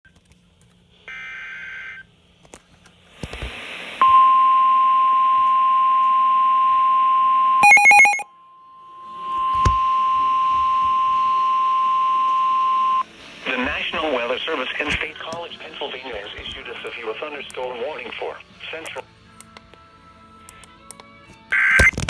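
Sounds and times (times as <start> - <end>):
radio static hiss: 0.9 - 4.1, 9.3 - 19.1, 21.5 - 22.0
short electronic beep: 4.0 - 13.0
steady alarm tone: 4.0 - 13.2.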